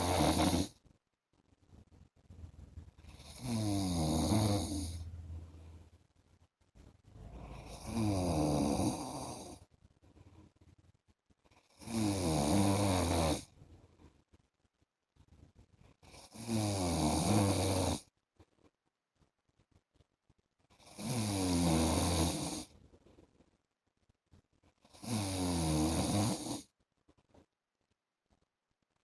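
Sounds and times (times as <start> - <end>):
man snoring: 0.0 - 0.7, 3.1 - 5.0, 7.3 - 9.6, 11.8 - 13.5, 16.2 - 18.0, 20.8 - 22.7, 25.0 - 26.7
quiet breaths: 0.0 - 27.5.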